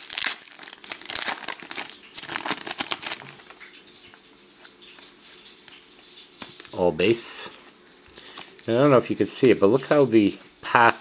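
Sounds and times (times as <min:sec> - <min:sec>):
cards rustling: 0:00.0 - 0:03.6, 0:07.5 - 0:09.8
wrapper crinkling: 0:00.0 - 0:03.7, 0:07.4 - 0:09.9.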